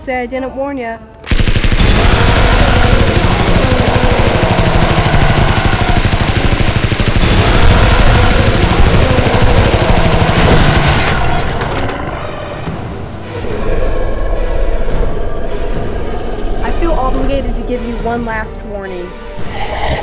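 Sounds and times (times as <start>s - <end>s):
rapid machine-gun fire: 1.3s - 12.5s.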